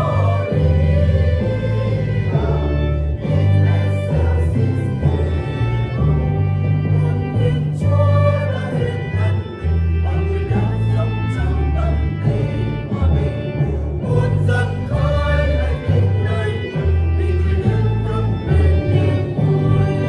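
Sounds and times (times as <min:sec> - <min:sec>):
choir singing a hymn: 0:00.0 - 0:20.0
instrumental accompaniment: 0:00.0 - 0:20.0.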